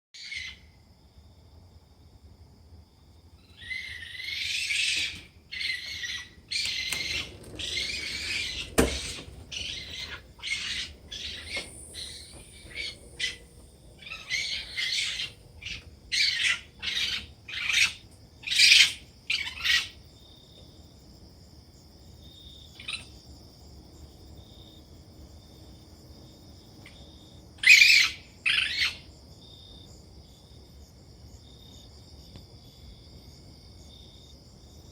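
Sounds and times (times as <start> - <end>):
high insect-like drone: 3.4 - 26.6
bird calling harshly: 3.5 - 19.9.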